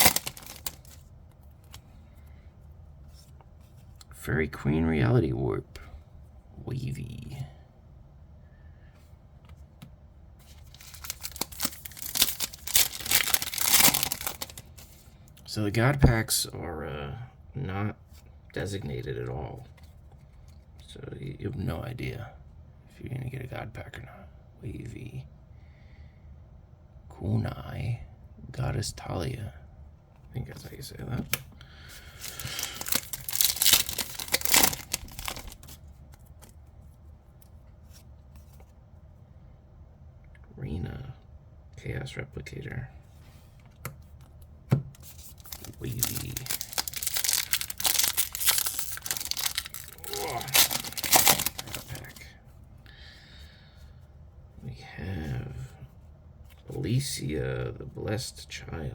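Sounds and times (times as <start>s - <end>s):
foil wrapper tearing and crinkling: 0.0s - 1.0s, 10.6s - 15.0s, 32.2s - 35.8s, 45.0s - 52.2s.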